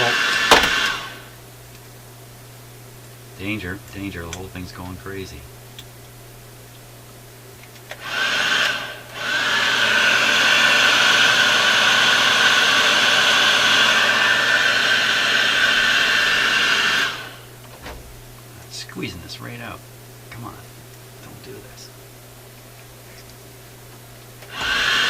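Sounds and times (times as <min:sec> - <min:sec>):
heat gun blowing: 0:00.0 - 0:01.4, 0:07.9 - 0:17.5, 0:24.5 - 0:25.0.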